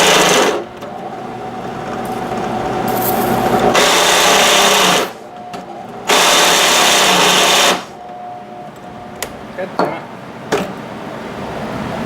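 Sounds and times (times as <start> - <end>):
power drill boring through steel: 0.0 - 5.2, 6.0 - 8.0.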